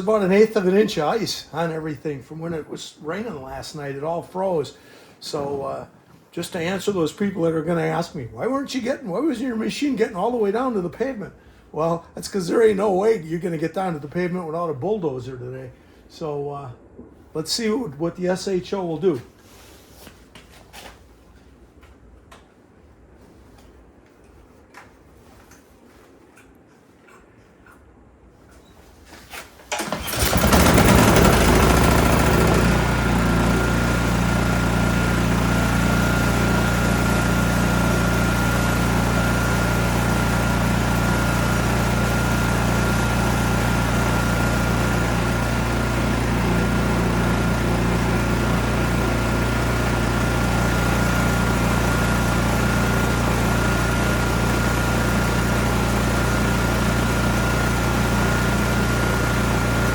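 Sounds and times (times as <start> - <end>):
snow blower engine running: 0.0 - 3.2, 29.7 - 59.9.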